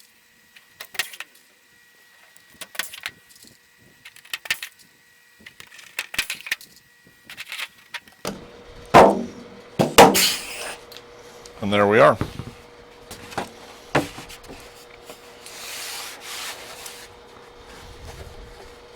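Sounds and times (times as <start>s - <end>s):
louder knocks: 9.0s - 10.4s
handling rustle: 12.2s - 18.9s.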